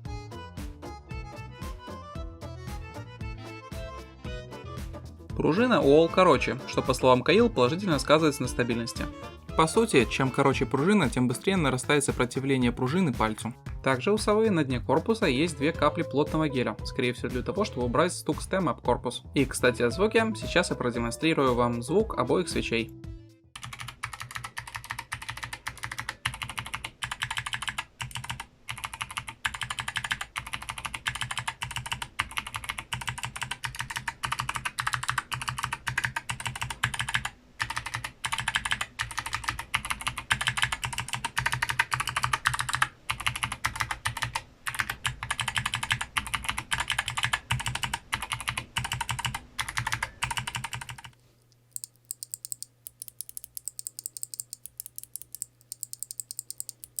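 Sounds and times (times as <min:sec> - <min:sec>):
clicky keyboard typing: 0:23.6 - 0:57.0.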